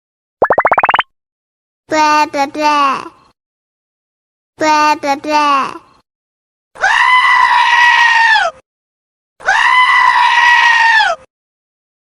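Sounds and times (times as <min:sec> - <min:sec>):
bleat notification tone: 0:00.4 - 0:01.0.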